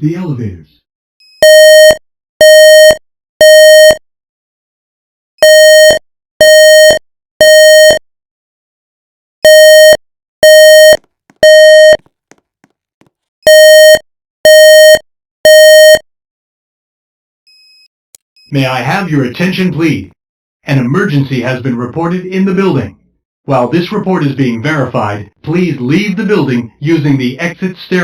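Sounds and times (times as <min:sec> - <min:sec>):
fire alarm beeps: 0:01.2 - 0:04.0, 0:09.4 - 0:12.0, 0:13.4 - 0:16.0.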